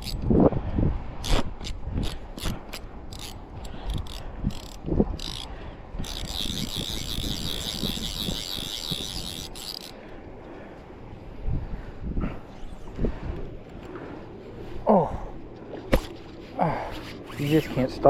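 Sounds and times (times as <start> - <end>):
fishing reel drag clicking: 1.2 - 10.0, 17.1 - 17.8
reel drag buzzing: 1.2 - 10.2, 17.0 - 17.9.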